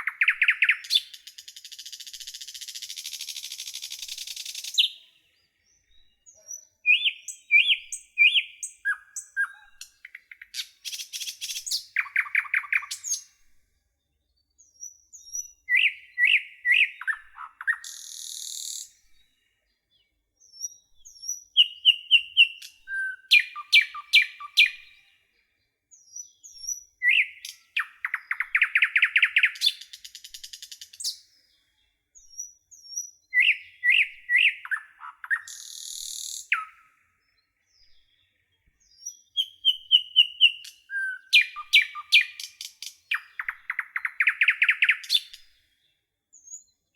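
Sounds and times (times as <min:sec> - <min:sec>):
songbird singing: 0:00.0 - 0:46.9.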